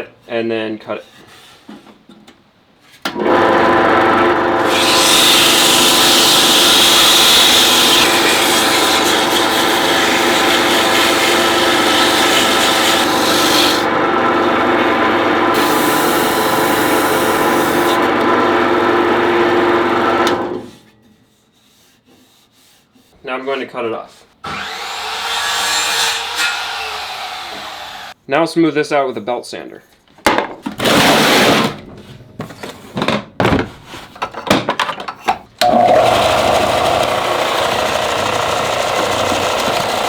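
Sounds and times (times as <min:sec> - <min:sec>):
lathe motor hum: 0:03.2 - 0:20.6, 0:35.6 - 0:40.0
sandpaper sanding spinning wood: 0:04.6 - 0:19.2, 0:36.3 - 0:40.0.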